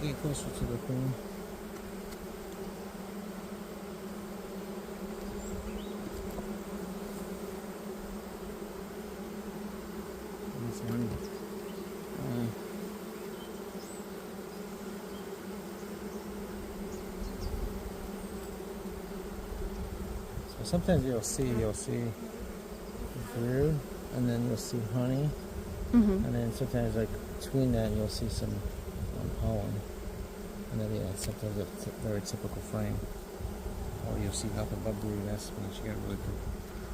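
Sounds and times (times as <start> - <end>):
honeybees buzzing: 0.0 - 36.9.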